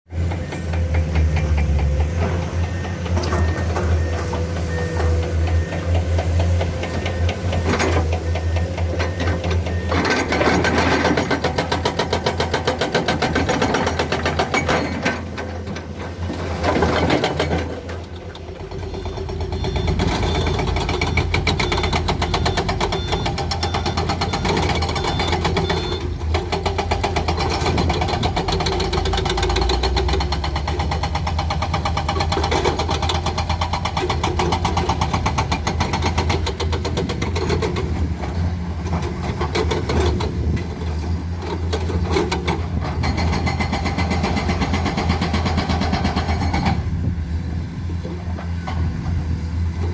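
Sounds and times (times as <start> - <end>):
diesel engine running: 0.1 - 49.9.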